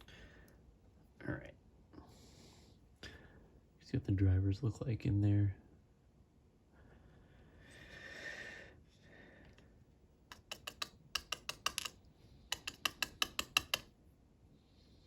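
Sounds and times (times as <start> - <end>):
lock parts clicking: 10.3 - 13.9
lock parts scraping: 10.3 - 13.9.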